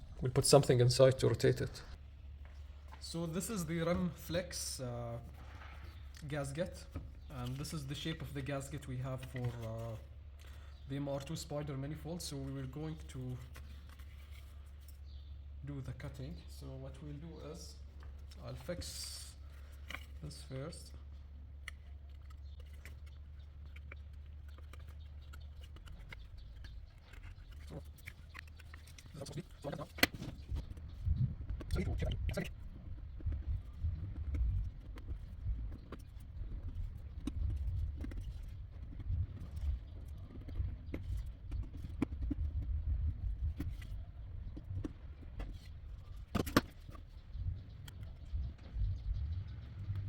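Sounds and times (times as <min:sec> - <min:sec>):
steady low hum: 0:00.0 - 0:50.0.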